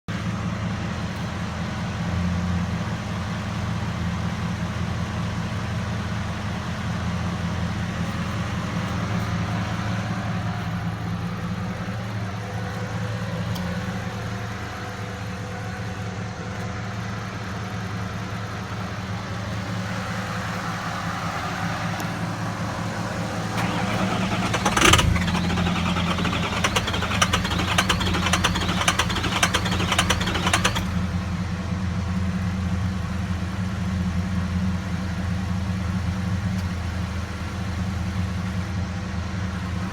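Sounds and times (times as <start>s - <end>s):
diesel engine drone: 0.1s - 39.9s.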